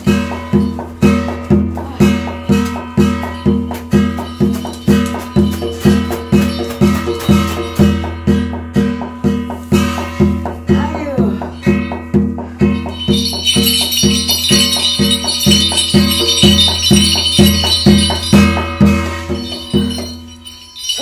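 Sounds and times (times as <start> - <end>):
bells jingling: 0.0 - 21.0
drum beating steadily: 0.0 - 21.0
sustained ringing tones: 2.2 - 9.3, 11.6 - 21.0.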